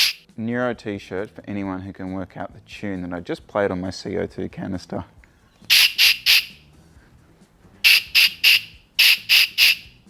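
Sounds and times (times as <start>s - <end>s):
gas canister puffs: 5.7s - 6.6s, 7.8s - 9.9s.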